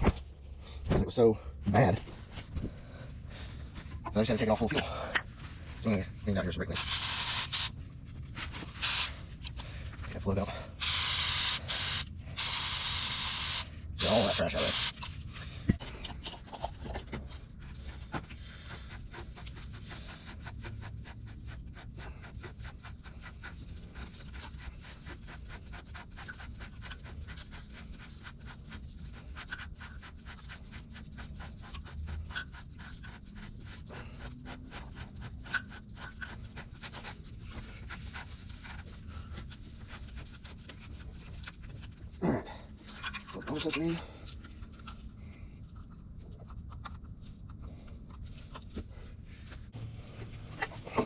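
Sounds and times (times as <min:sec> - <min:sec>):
scratching and clicking in plastic bowl: 0:13.9 - 0:49.6.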